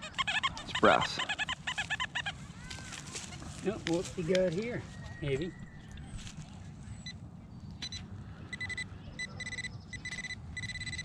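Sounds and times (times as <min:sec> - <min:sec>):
metal detector high beep: 0:07.8 - 0:11.0.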